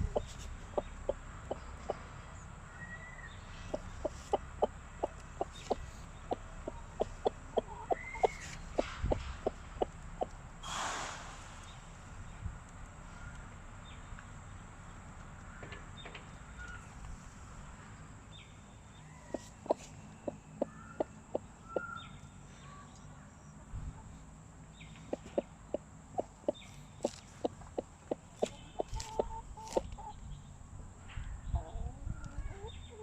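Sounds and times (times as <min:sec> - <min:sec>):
hen clucking: 0:00.0 - 0:02.6, 0:03.2 - 0:10.4, 0:19.0 - 0:22.2, 0:24.8 - 0:30.3.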